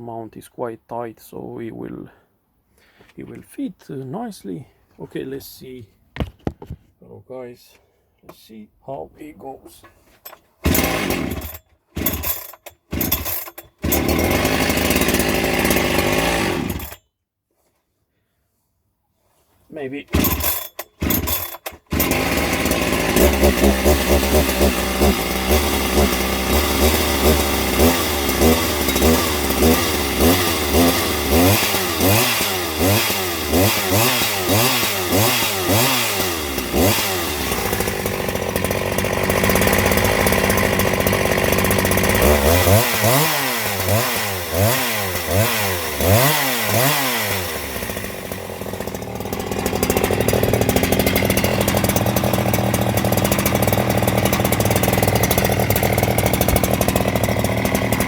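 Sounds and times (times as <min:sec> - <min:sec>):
chainsaw engine revving: 0:10.6 - 0:17.0, 0:20.0 - 0:58.0.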